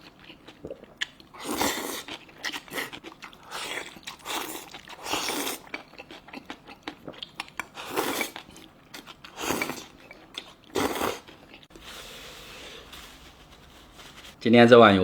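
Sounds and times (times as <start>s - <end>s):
person chewing with mouth clicks: 0.0s - 11.7s.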